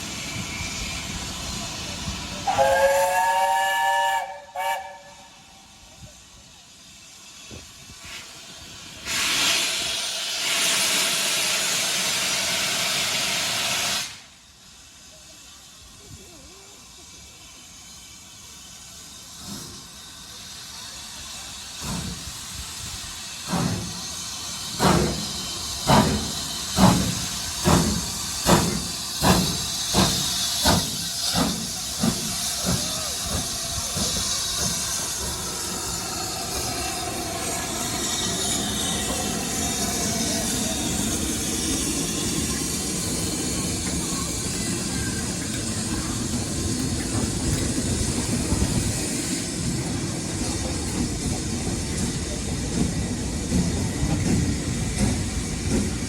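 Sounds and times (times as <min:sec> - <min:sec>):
steam hissing: 0:00.0 - 0:56.0
steam locomotive whistle: 0:02.4 - 0:05.7.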